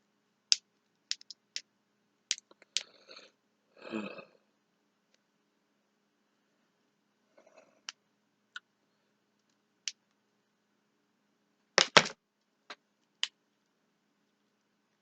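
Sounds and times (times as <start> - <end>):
plastic figures clicking: 0.5 - 1.7.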